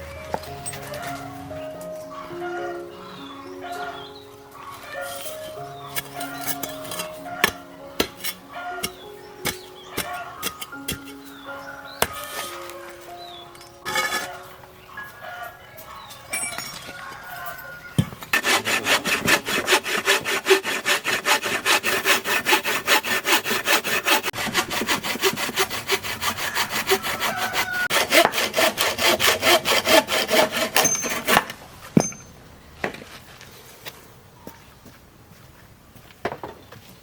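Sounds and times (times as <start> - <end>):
hand saw cutting wood: 6.0 - 11.1, 18.3 - 31.6.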